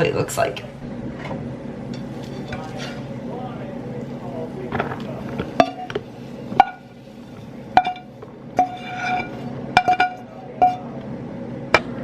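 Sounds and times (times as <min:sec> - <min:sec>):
metal utensil scraping a pan: 0:01.9 - 0:03.2, 0:05.0 - 0:10.8.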